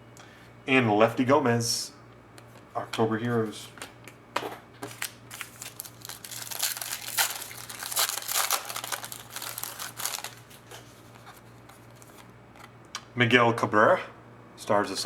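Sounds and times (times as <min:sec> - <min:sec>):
faint steady hum: 0:00.0 - 0:15.0
wrapper crinkling and tearing: 0:04.8 - 0:12.2.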